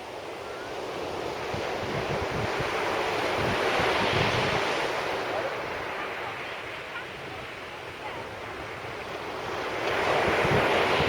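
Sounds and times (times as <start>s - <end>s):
sea waves washing on beach: 0.0s - 11.0s
wind buffeting microphone: 1.1s - 4.8s, 8.0s - 11.0s.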